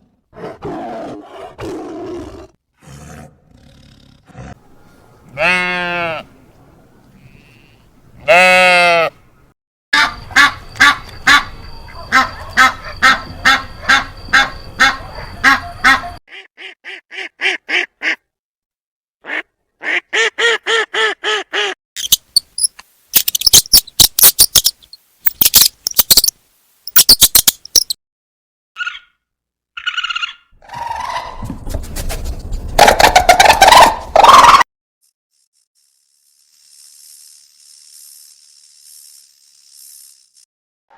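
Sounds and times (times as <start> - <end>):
repeated pitched animal calls: 10.0 - 17.0, 28.8 - 29.2, 29.8 - 31.5, 32.8 - 34.6
sharp chattering bursts: 22.0 - 26.3, 26.9 - 28.0.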